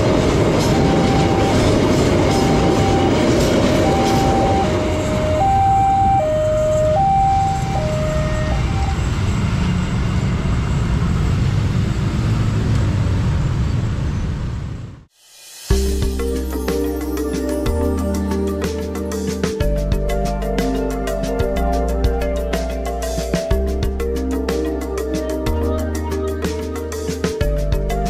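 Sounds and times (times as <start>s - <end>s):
two-tone crossing warning siren: 0.0s - 10.1s
train rumbling and clattering: 0.0s - 14.9s.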